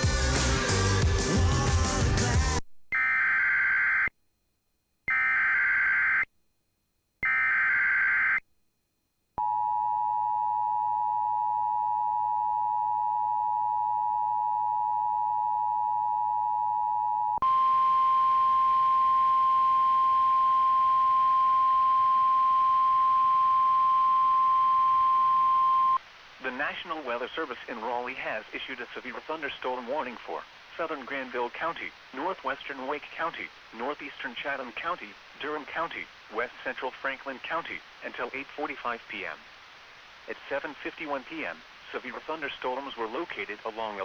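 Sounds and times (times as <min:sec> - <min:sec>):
faint hiss: 0:26.0 - 0:44.0.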